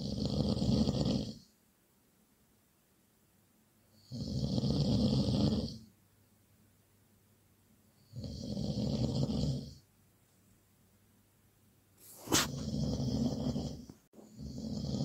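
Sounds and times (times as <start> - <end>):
person snoring loudly: 0.0 - 1.4, 4.0 - 5.9, 8.1 - 9.8, 12.2 - 15.0.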